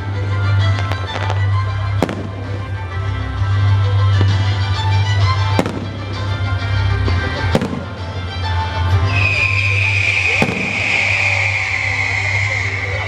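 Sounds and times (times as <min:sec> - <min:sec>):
loud music: 0:00.0 - 0:13.0
fireworks bangs: 0:00.8 - 0:02.8, 0:05.4 - 0:08.2, 0:09.1 - 0:13.0.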